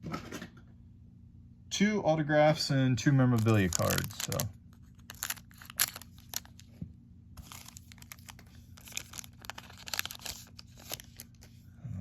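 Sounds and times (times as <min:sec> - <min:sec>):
wrapper tearing and crinkling: 0:03.3 - 0:06.7, 0:07.4 - 0:11.5.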